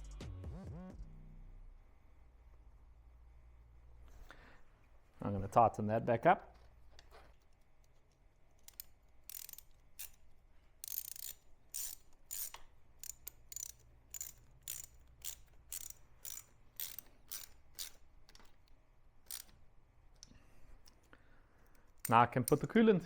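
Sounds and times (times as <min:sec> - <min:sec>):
ratchet wrench clicking: 0:08.5 - 0:19.6, 0:20.2 - 0:22.8.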